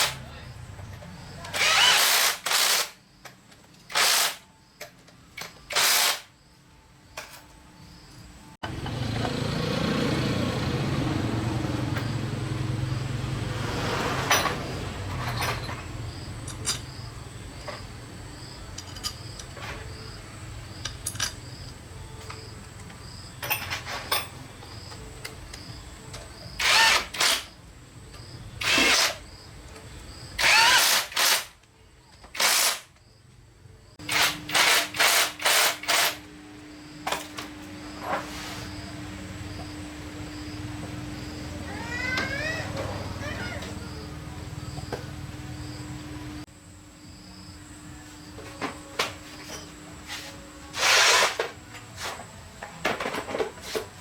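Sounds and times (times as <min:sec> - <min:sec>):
power tool bursts: 0:01.5 - 0:03.0, 0:03.9 - 0:04.4, 0:05.7 - 0:06.3, 0:26.6 - 0:27.5, 0:28.6 - 0:29.2, 0:30.4 - 0:31.5, 0:32.4 - 0:32.9, 0:34.0 - 0:36.2, 0:50.7 - 0:51.5.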